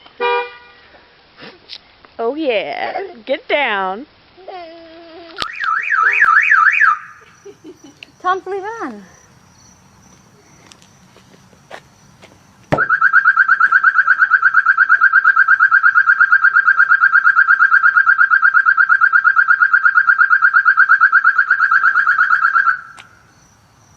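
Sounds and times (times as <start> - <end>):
car alarm warbling: 5.4 - 7.4, 12.8 - 23.3.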